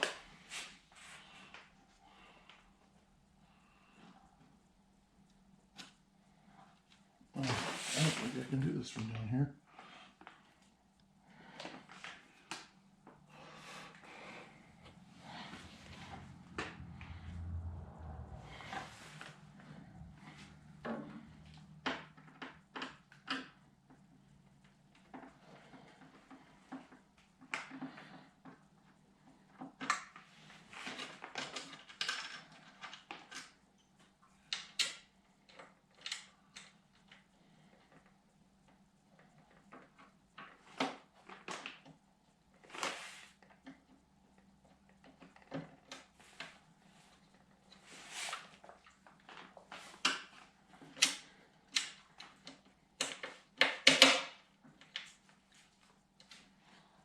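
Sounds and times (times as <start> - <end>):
faint steady hum: 0.0 - 57.0
faint hum: 0.1 - 22.2.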